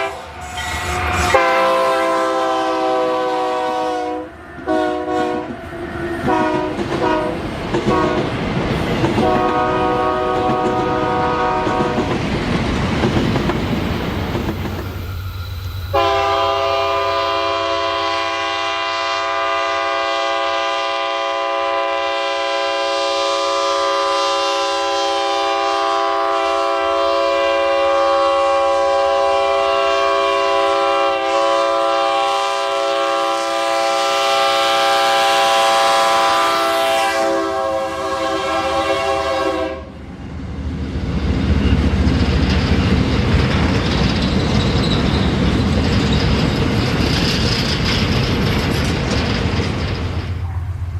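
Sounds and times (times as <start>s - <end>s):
locomotive air horn blast: 0.0s - 5.6s, 6.2s - 8.2s, 9.2s - 12.0s, 15.9s - 40.0s
train rumbling and clattering past: 0.0s - 22.1s, 34.7s - 50.9s.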